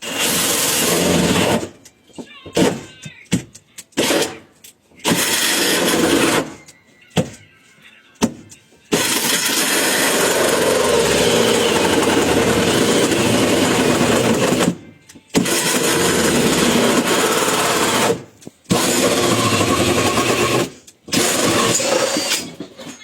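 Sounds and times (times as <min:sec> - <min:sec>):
power tool cutting sheet metal: 0:00.0 - 0:01.8, 0:04.0 - 0:06.6, 0:08.9 - 0:14.8, 0:15.4 - 0:22.8.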